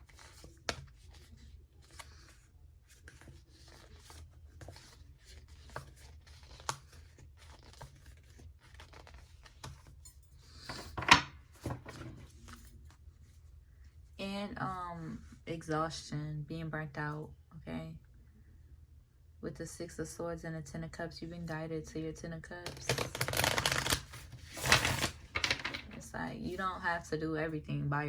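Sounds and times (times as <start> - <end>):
cards brushing and scraping: 22.7 - 26.0.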